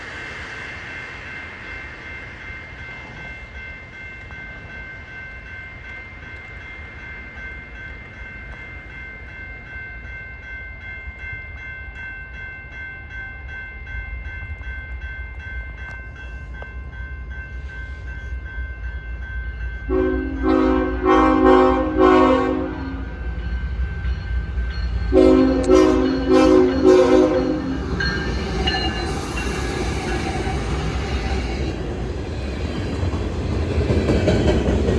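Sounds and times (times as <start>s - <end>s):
freight train rumbling: 0.0s - 34.9s
locomotive horn blasts: 19.9s - 23.0s, 25.1s - 27.8s.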